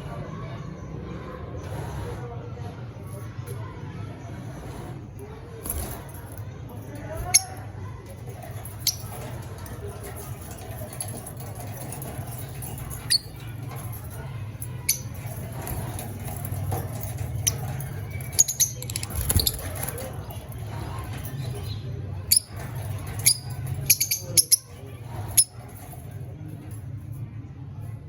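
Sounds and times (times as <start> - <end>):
lovebirds chirping and squeaking: 6.9 - 7.8, 8.4 - 26.1.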